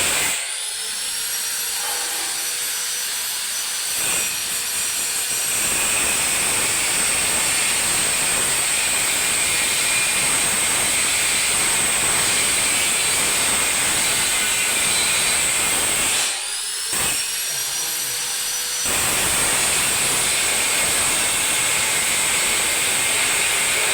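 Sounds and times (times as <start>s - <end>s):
arc welding hiss and whine: 0.0s - 23.9s.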